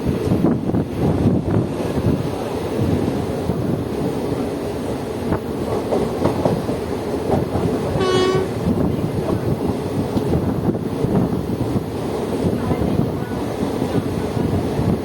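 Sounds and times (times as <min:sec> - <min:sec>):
train wheels rumbling on track: 0:00.0 - 0:15.0
train horn blast: 0:08.0 - 0:08.6.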